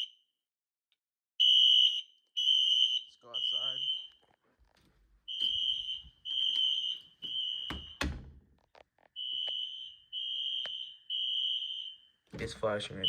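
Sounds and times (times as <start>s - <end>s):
fire alarm horn beeps: 1.4s - 4.2s, 5.3s - 8.0s, 9.2s - 12.2s.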